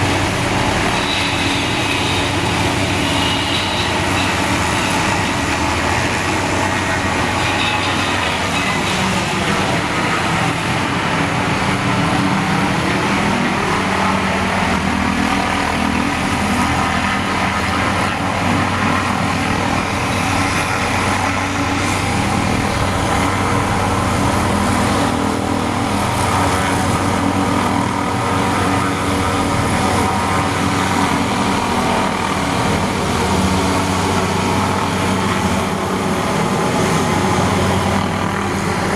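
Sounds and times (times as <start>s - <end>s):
helicopter hovering drone: 0.0s - 38.9s.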